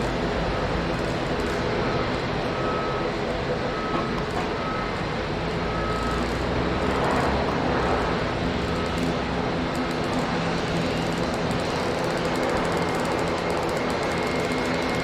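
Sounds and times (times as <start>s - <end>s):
jet engines rushing: 0.0s - 15.0s
faint high beep: 5.7s - 6.3s.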